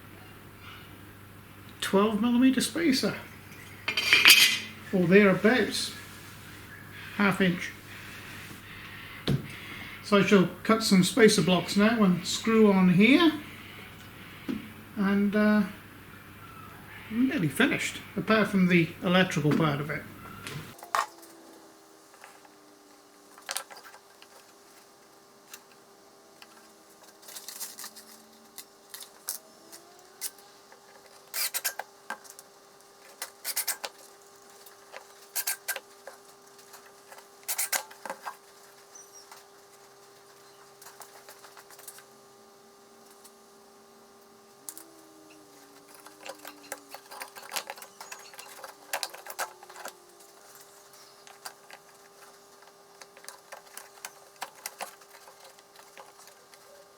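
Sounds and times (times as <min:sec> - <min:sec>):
faint hum: 0:00.0 - 0:56.9
tools clicking and clinking: 0:03.9 - 0:04.7, 0:45.8 - 0:50.6.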